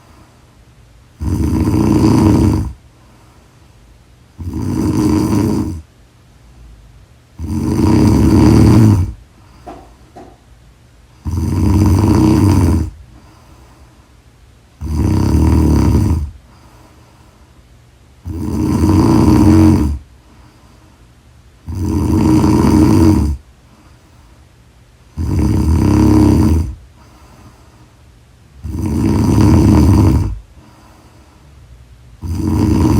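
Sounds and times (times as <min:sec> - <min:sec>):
quiet breathing: 0:00.0 - 0:05.9, 0:07.4 - 0:10.4, 0:11.0 - 0:32.9
person snoring loudly: 0:01.2 - 0:02.8, 0:04.4 - 0:05.9, 0:07.4 - 0:09.2, 0:11.2 - 0:13.0, 0:14.8 - 0:16.4, 0:18.2 - 0:20.0, 0:21.6 - 0:23.4, 0:25.1 - 0:26.8, 0:28.6 - 0:30.4, 0:32.2 - 0:32.9.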